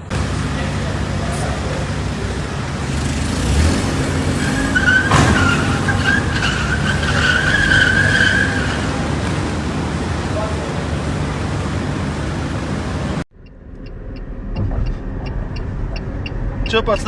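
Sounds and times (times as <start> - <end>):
car engine running hard: 0.0 - 17.0
high tyre squeal: 2.8 - 9.3
sharp knock: 14.5 - 15.4.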